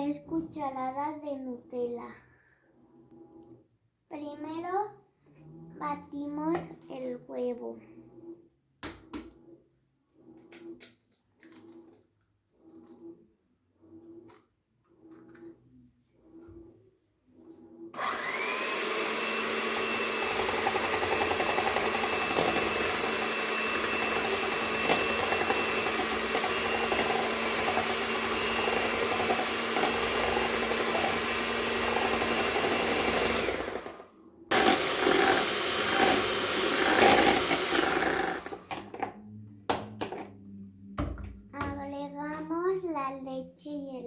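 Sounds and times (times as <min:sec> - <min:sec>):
electric mixer beating egg: 0:18.0 - 0:39.0.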